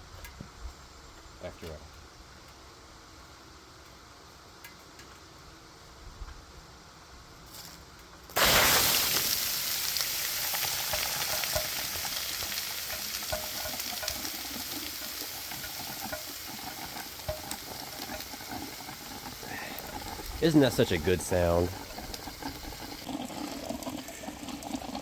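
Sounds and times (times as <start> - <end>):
water hissing on hot metal: 7.5 - 25.0.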